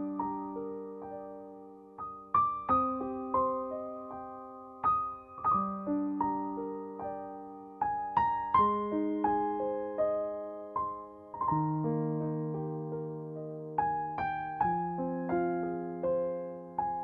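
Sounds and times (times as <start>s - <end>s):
gentle piano melody: 0.0s - 17.0s.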